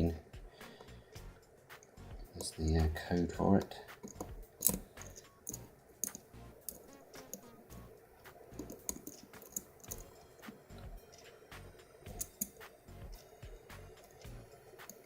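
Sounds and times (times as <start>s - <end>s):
lock pick clicking and scraping: 4.0s - 7.4s.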